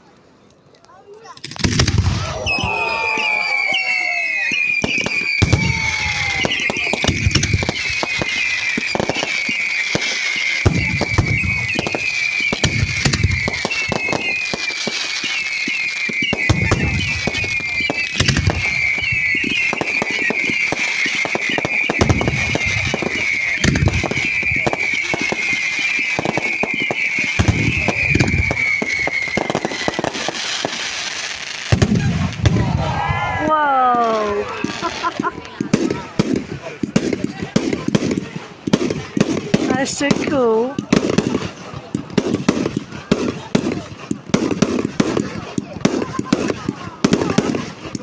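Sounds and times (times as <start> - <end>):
fireworks crackling bangs: 1.0 - 48.0
fireworks booms: 1.2 - 48.0
fireworks whistling: 1.2 - 48.0
deep firework thumps: 1.4 - 2.3, 31.7 - 33.0.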